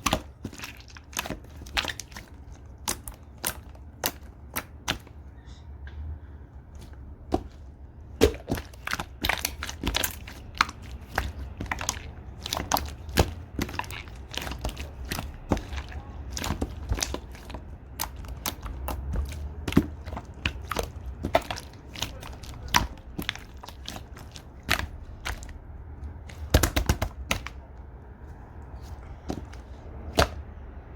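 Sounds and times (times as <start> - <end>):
slime clicking and popping: 0.0 - 5.1, 8.2 - 25.6.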